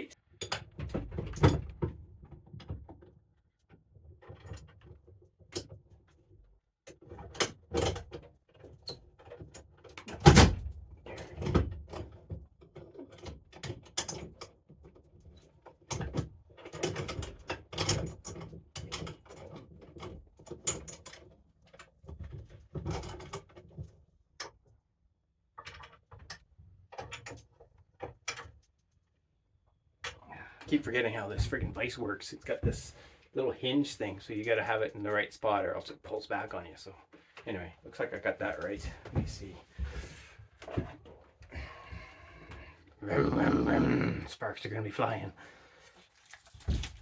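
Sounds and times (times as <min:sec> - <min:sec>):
metal clanks and rattles of vise: 0:00.4 - 0:03.1, 0:04.1 - 0:06.2, 0:06.9 - 0:24.6.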